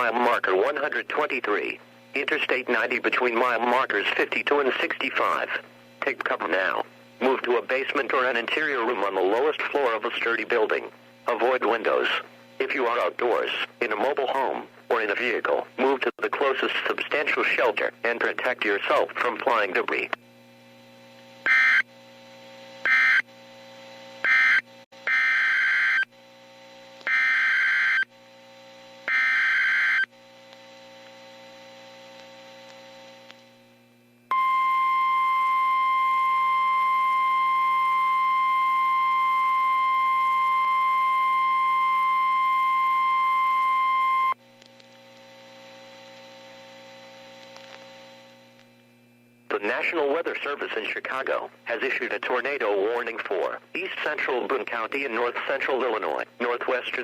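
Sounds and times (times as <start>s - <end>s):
receiver hiss: 0.0s - 57.0s
steady warning alarm tone: 21.4s - 21.9s, 22.8s - 23.3s, 24.2s - 26.1s, 27.0s - 28.1s, 29.0s - 30.1s, 34.3s - 44.4s.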